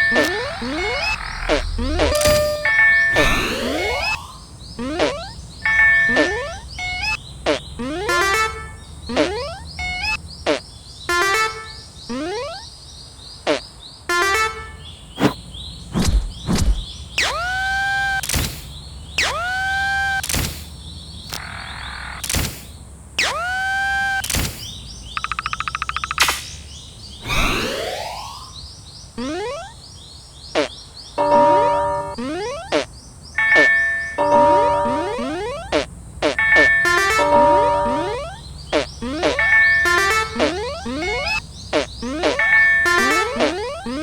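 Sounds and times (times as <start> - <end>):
short rapid buzz: 0.0 - 5.4, 27.2 - 28.6
springy rising swoops: 0.0 - 5.4, 27.2 - 28.6
cartoon whistle sweeps falling: 0.1 - 5.3, 27.2 - 28.6
sharp thunks: 15.2 - 17.5.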